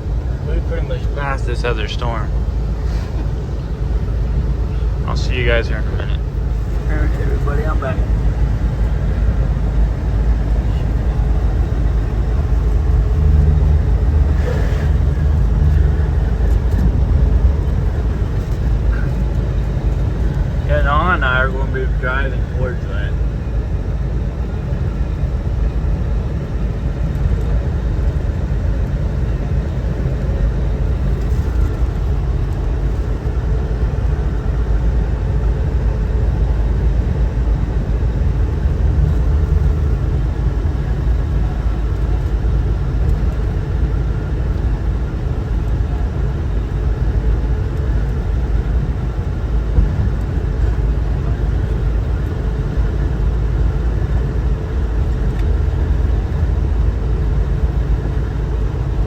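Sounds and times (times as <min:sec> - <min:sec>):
road and engine noise in car: 0:00.0 - 0:59.0.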